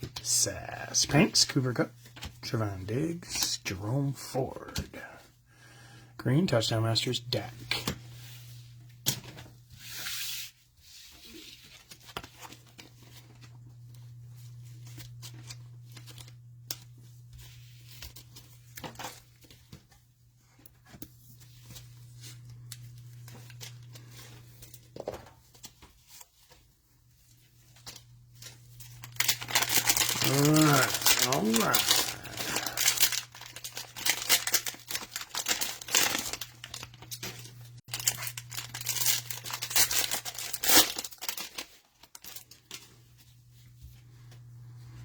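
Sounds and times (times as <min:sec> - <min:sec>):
wrapper crinkling: 0:27.8 - 0:43.0
cellophane wrapper tearing: 0:27.9 - 0:42.8.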